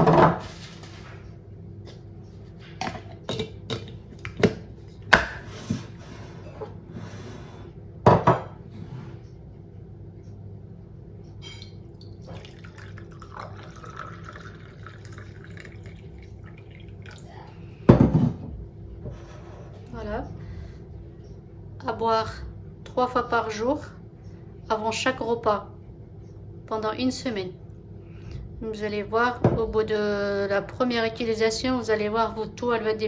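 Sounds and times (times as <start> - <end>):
glassware and utensils clinking: 11.4 - 15.7
liquid trickling: 11.7 - 17.8.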